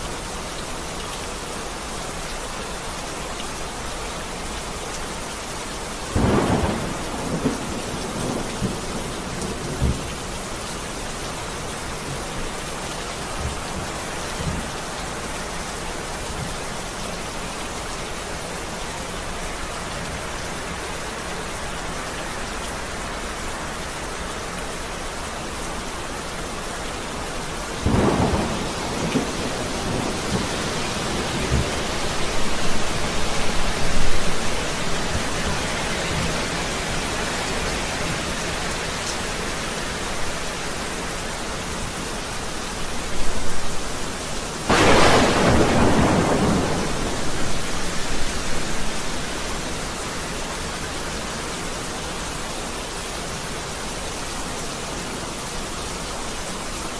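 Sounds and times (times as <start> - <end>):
heavy rain: 0.0 - 56.9
thunder rumbling: 6.2 - 10.2, 27.7 - 36.4, 44.7 - 49.8.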